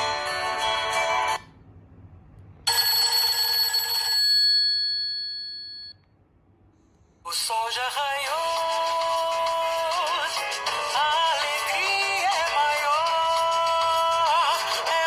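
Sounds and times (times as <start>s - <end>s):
ringtone melody: 8.6s - 15.0s.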